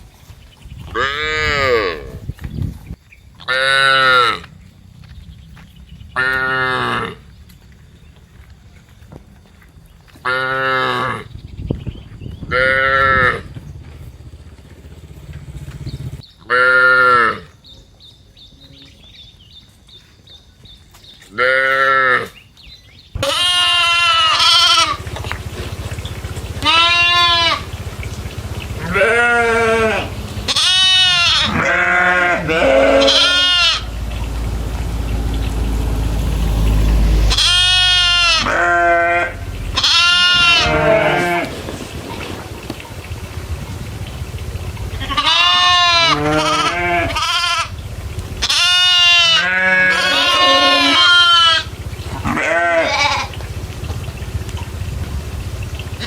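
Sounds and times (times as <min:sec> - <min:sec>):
goats bleating: 0:01.0 - 0:02.2, 0:23.2 - 0:25.1, 0:26.6 - 0:27.7, 0:28.7 - 0:34.0, 0:37.3 - 0:41.8, 0:44.9 - 0:47.8, 0:48.4 - 0:53.4
low rumble: 0:11.1 - 0:16.2, 0:23.2 - 0:56.0.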